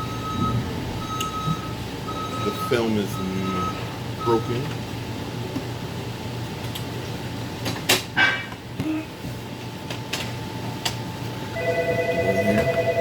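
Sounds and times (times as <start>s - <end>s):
telephone ringer trilling: 11.6s - 13.0s.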